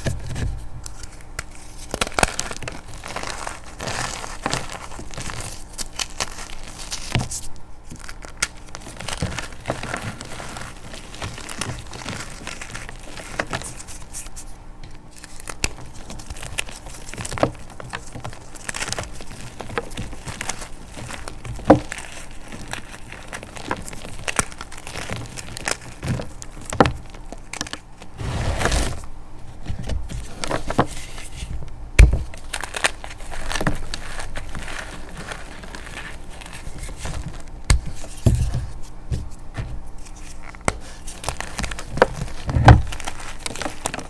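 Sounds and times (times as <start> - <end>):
chalk being crushed: 30.3 - 44.0.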